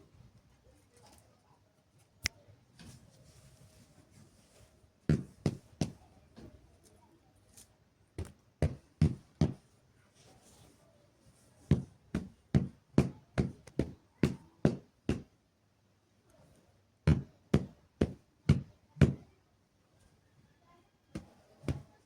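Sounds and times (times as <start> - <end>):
blankets being beaten: 5.1 - 6.0, 8.2 - 9.6, 11.7 - 15.4, 17.1 - 19.3, 21.2 - 22.0.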